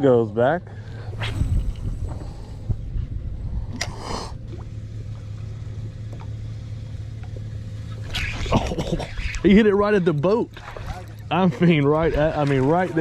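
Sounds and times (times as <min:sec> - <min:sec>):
steady low hum: 0:00.0 - 0:13.0
water dripping and sloshing: 0:09.2 - 0:13.0
short water splash: 0:10.4 - 0:13.0.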